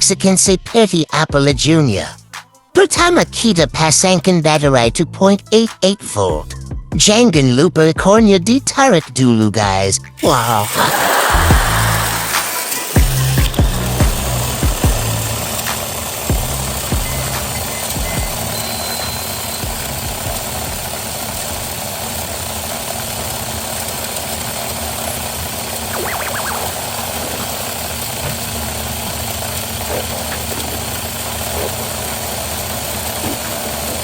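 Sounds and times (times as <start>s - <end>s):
toy car motor whirring: 10.2s - 34.0s.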